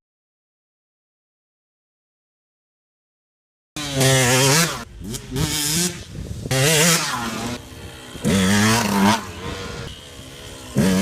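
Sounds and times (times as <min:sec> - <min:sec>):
dirt bike engine revving: 0:03.8 - 0:11.0.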